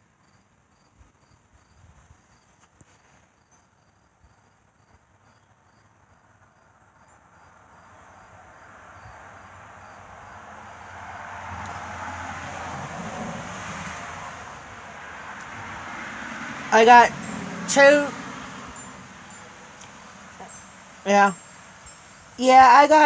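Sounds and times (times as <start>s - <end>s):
crickets chirping: 0.0s - 23.0s
vehicle approaching: 8.4s - 23.0s.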